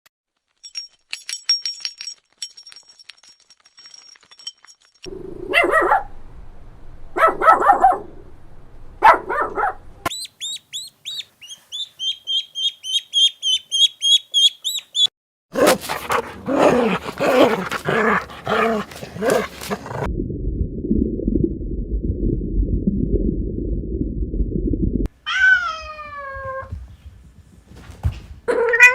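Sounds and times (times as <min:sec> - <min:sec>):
rapid high chirping: 0:10.1 - 0:15.1.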